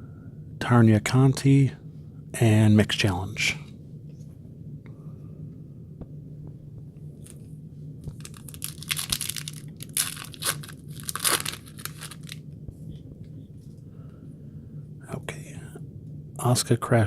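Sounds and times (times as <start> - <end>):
foil wrapper tearing and crinkling: 8.1 - 12.4.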